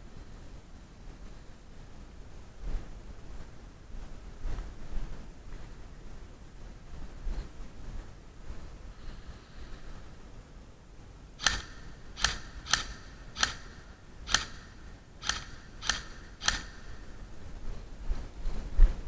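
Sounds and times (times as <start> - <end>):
airsoft gun shots: 11.4 - 17.2.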